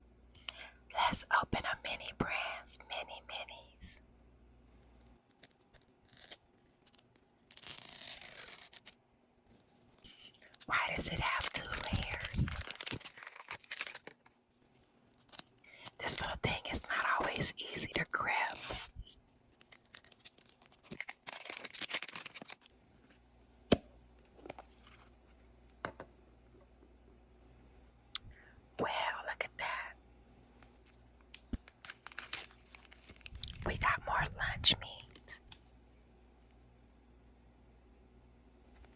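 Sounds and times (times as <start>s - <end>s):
plastic packaging crinkling and tearing: 5.4s - 9.0s, 10.1s - 14.4s, 19.5s - 22.7s, 30.8s - 33.9s.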